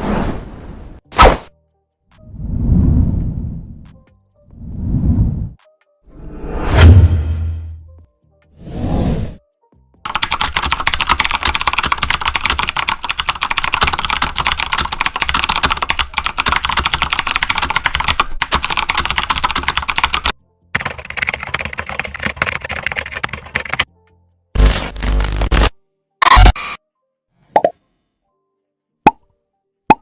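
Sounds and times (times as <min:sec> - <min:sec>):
keyboard typing: 0:10.0 - 0:23.9.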